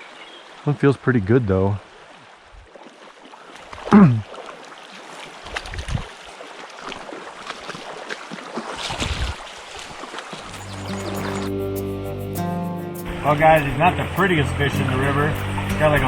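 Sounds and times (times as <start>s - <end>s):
water splashing: 1.8s - 12.1s, 13.0s - 16.0s
river water rushing: 6.2s - 16.0s.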